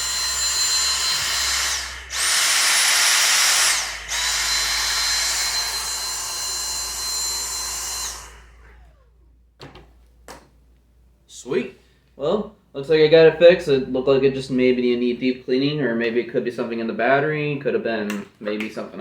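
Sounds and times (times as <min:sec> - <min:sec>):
vacuum motor whining: 0:00.0 - 0:09.3.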